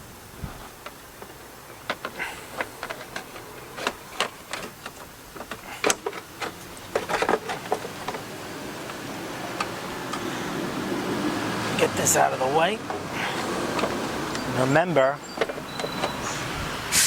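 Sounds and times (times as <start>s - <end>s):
parts clicking and clattering: 0.7s - 10.3s, 12.2s - 16.5s.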